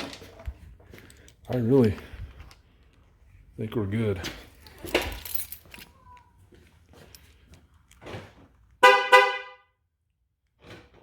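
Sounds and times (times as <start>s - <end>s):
car horn chirps: 8.8s - 9.7s.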